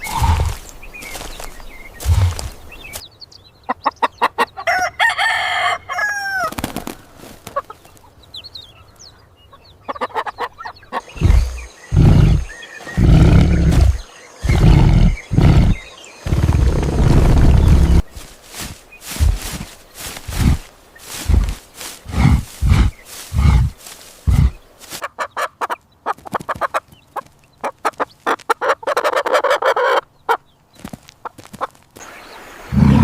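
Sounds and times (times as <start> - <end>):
rooster crowing: 4.7 - 6.5
hens clucking: 9.5 - 31.8
loud low repeating sounds: 11.0 - 18.1, 19.1 - 24.6.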